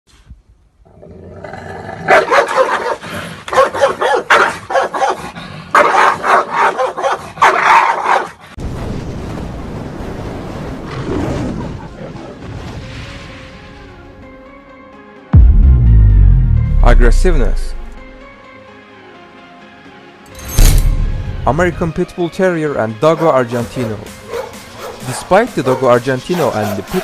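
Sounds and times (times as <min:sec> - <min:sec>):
dogs barking and snarling: 0:01.0 - 0:08.6, 0:23.0 - 0:27.0
steady low sound: 0:15.4 - 0:18.2.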